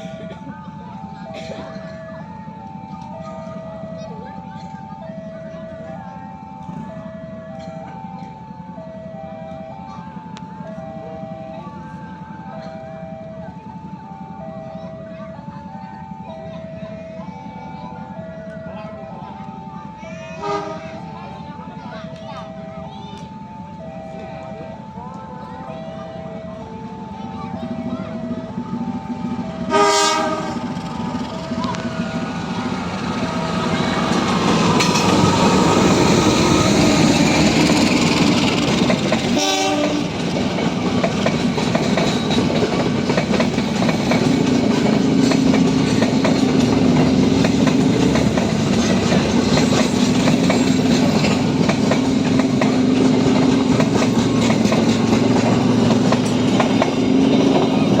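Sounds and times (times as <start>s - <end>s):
train rumbling: 0.0s - 58.0s
train horn blasts: 20.4s - 21.0s, 29.5s - 31.1s, 39.2s - 40.3s
wheels clacking over rail joints: 26.6s - 58.0s.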